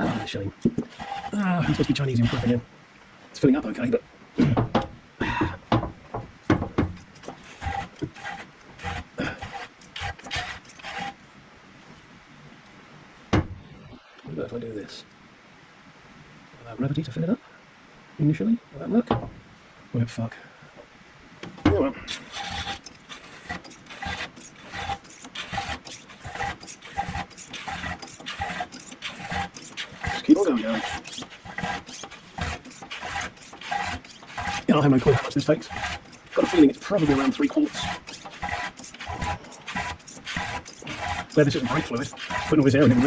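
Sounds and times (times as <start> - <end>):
hand pump knocking and squeaking: 5.7 - 11.1, 21.7 - 43.0.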